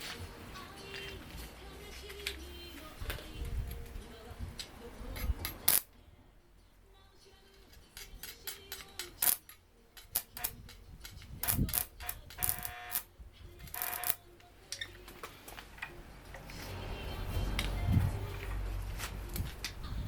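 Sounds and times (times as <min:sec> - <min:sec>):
tools and metal parts clinking: 0:05.1 - 0:05.9, 0:07.5 - 0:13.0.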